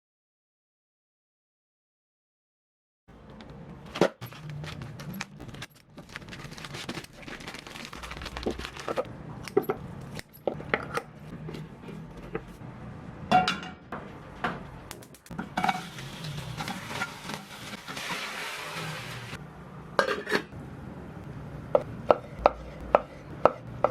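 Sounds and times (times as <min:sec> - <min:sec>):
utensils and dishes clinking: 0:08.6 - 0:12.6, 0:15.3 - 0:19.3, 0:20.0 - 0:20.6.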